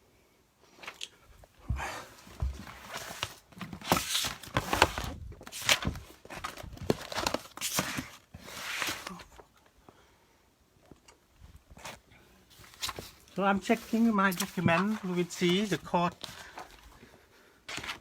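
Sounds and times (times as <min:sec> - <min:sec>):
paper rustling and crinkling: 0:02.0 - 0:09.6, 0:11.7 - 0:18.0.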